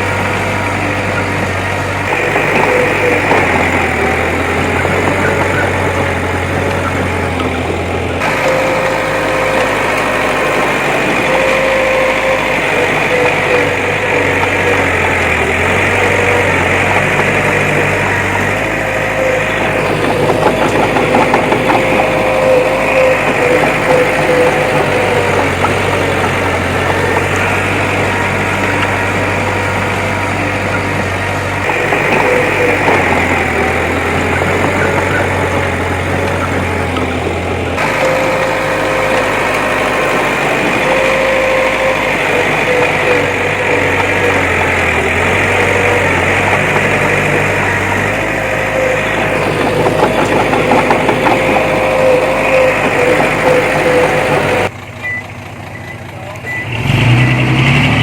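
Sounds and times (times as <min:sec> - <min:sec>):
bulldozer diesel engine running: 0:00.0 - 0:58.0.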